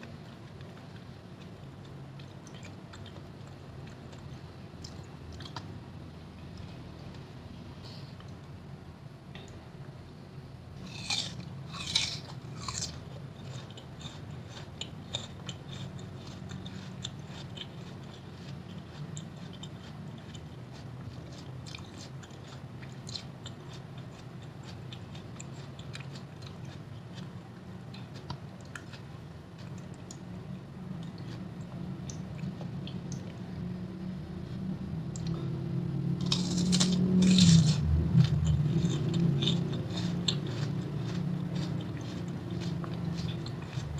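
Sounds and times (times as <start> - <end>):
crisp chewing: 0.0 - 5.8, 10.8 - 33.4, 36.2 - 43.9
crunching bites into fruit: 10.8 - 27.3, 36.2 - 43.9
low hum: 27.3 - 43.9.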